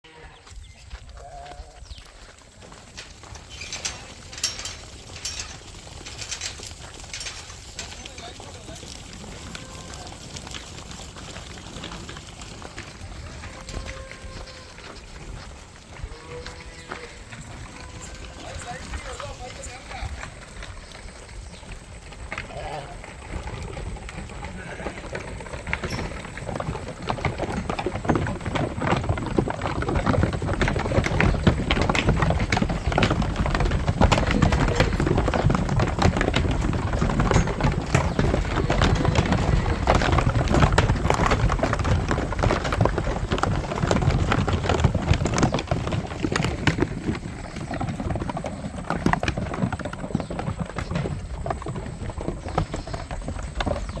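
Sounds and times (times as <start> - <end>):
sheep hooves clattering: 0.1 - 54.0.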